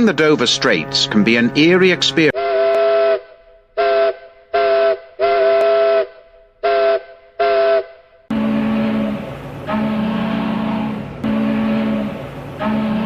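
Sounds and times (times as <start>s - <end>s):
deep steady tone: 0.0s - 3.8s, 8.3s - 13.0s
ship's whistle blasts: 2.3s - 13.0s.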